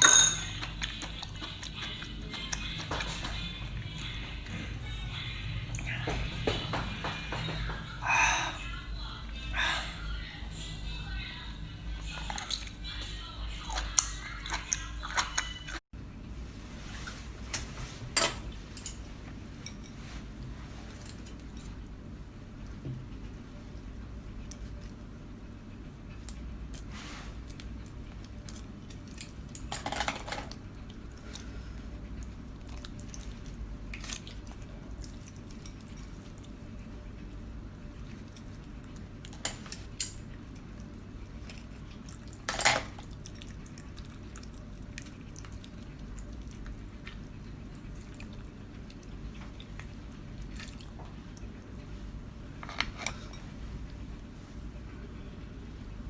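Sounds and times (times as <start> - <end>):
tableware clinking: 0.0 - 0.5, 18.1 - 19.0, 42.5 - 43.0
steady low hum: 0.0 - 56.0.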